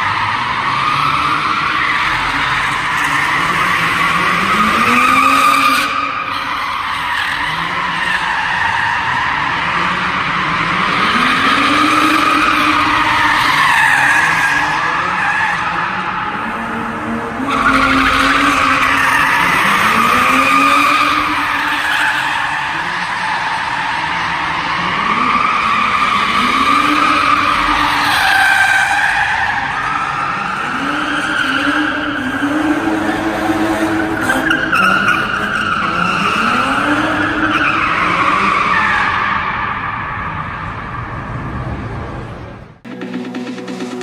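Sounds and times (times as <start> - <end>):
car engine revving: 0.0 - 44.0.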